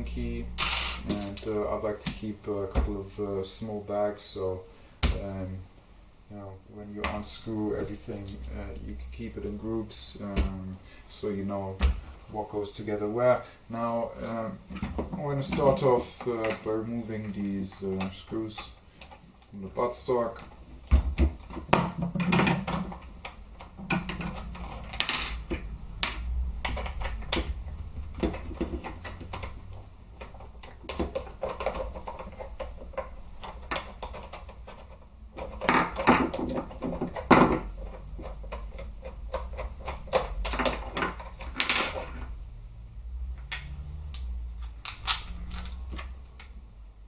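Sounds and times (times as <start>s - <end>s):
plastic parts handled: 20.4s - 42.4s, 43.4s - 46.6s.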